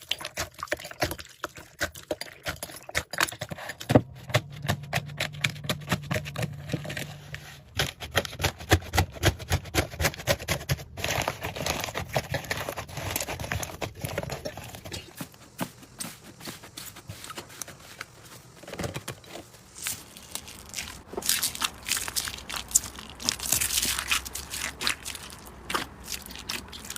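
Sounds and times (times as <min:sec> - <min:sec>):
slime squelching by hand: 0:10.9 - 0:26.9.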